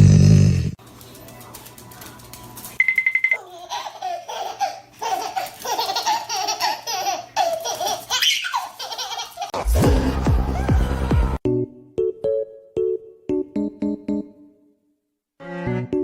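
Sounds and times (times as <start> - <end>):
baby laughing: 3.4 - 11.1.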